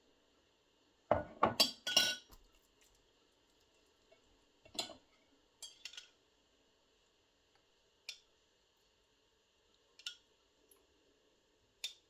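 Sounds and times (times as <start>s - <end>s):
dishes and utensils clinking: 1.2s - 2.4s.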